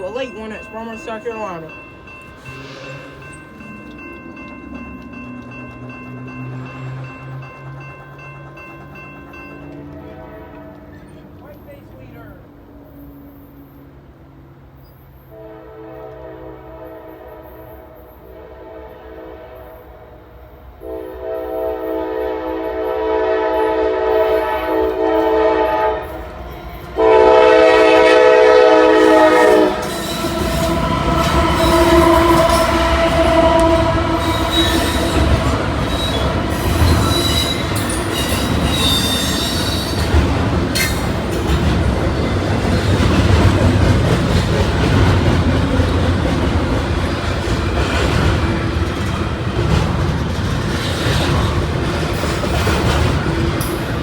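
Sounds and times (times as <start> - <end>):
train rumbling past: 0.0 - 54.0
clicking wheels: 3.0 - 11.1
locomotive air horn blasts: 15.3 - 20.2, 20.8 - 26.2, 27.0 - 40.0
high wheel squeal: 29.0 - 41.6.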